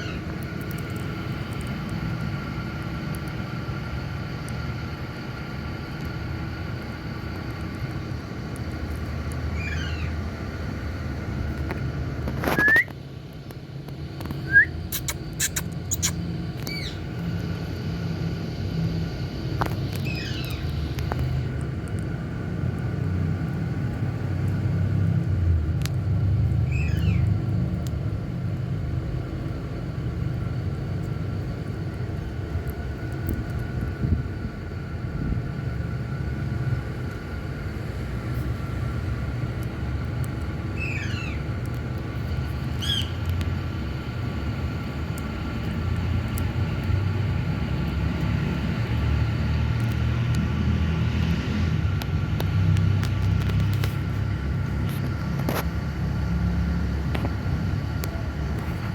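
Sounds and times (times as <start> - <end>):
parakeet calls: 0.0 - 0.3, 9.5 - 10.2, 14.4 - 17.1, 19.9 - 21.0, 26.6 - 27.3, 40.7 - 41.4, 42.7 - 43.2.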